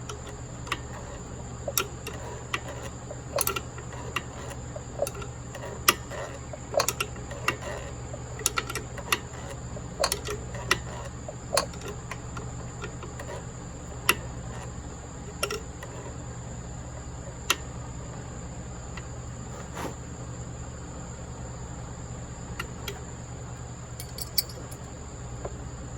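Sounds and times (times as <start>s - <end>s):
steady low hum: 0.0s - 25.9s
metal tools clicking and tapping: 3.4s - 3.6s, 24.0s - 24.8s.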